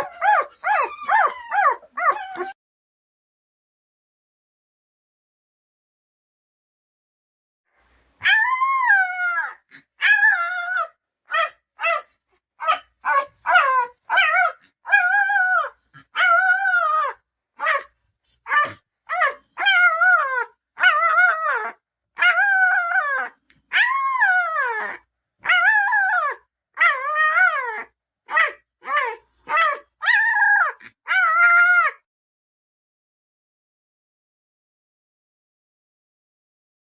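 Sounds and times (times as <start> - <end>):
puppy crying: 0.0 - 2.6, 8.2 - 32.1.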